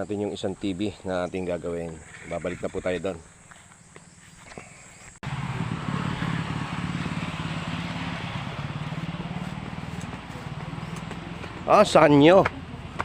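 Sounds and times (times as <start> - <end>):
road noise: 0.0 - 13.0
vehicle engine running: 5.2 - 13.0.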